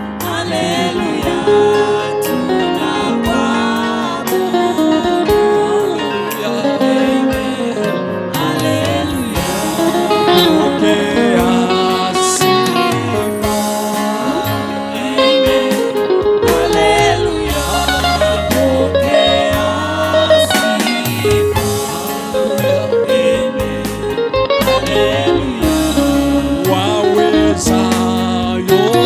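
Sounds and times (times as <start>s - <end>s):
guitar: 0.0s - 29.0s
voices singing: 0.0s - 29.0s
steady bass line: 8.8s - 29.0s.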